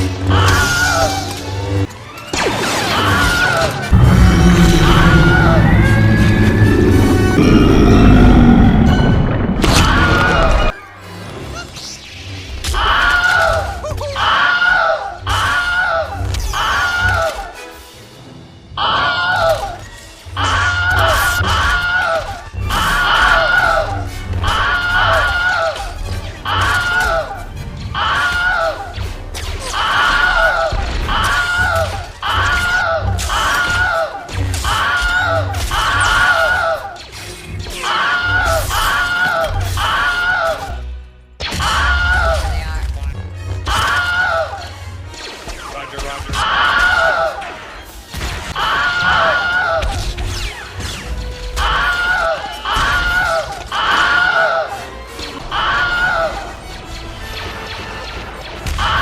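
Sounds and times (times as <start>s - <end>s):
music: 0.0s - 59.0s
crashes: 3.8s - 10.7s
man screaming falling in pitch: 3.9s - 8.6s
low rumble: 3.9s - 10.7s.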